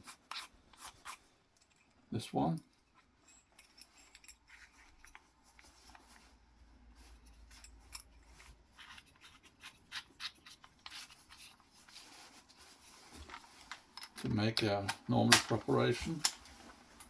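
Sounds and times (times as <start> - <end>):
faint clicks and scraping: 0.0 - 17.0.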